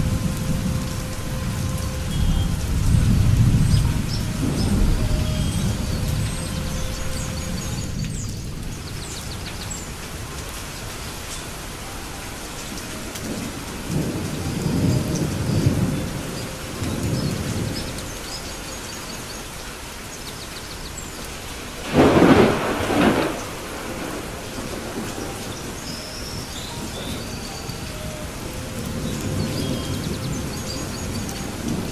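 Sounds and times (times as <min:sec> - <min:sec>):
low roll of thunder: 0:00.0 - 0:09.5, 0:13.3 - 0:18.2, 0:21.8 - 0:27.2
steady rain falling: 0:00.0 - 0:31.9
sharp thunderclap: 0:21.8 - 0:25.0.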